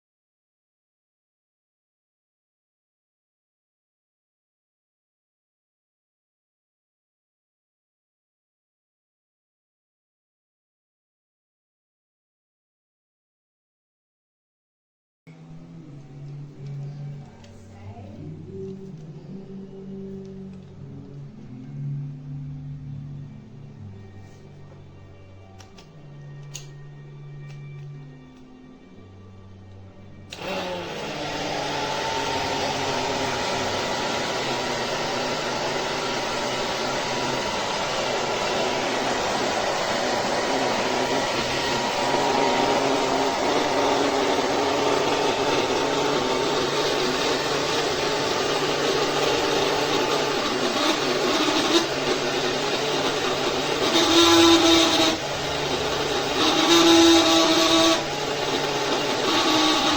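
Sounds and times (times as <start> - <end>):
hair dryer blowing: 30.3 - 59.9.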